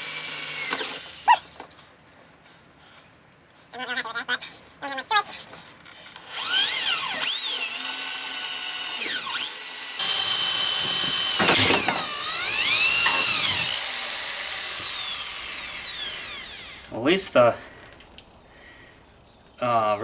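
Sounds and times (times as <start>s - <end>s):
electric drill whining: 0.0s - 1.4s, 6.2s - 17.0s.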